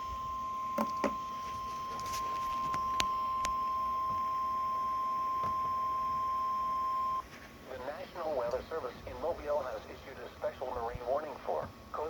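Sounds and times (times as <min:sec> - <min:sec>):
steady single-pitch alert tone: 0:00.0 - 0:07.2
faint static clicks: 0:00.0 - 0:12.0.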